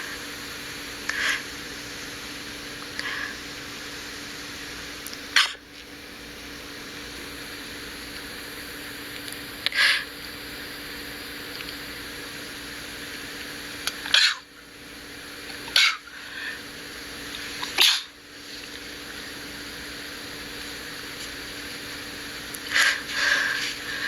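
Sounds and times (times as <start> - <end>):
person sneezing: 17.7 - 18.1.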